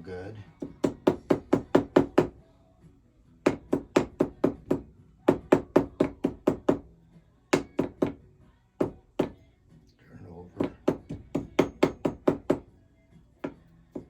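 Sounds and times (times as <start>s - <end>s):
hammer tapping wire: 10.6s - 12.6s.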